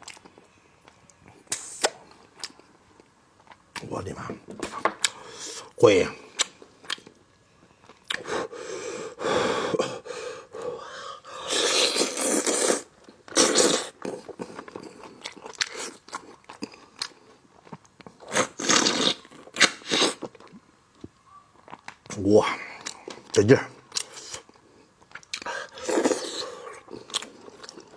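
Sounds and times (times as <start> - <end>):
person chewing meat: 0.0 - 3.9, 6.3 - 7.2, 7.8 - 8.3, 11.3 - 20.6, 22.6 - 27.9.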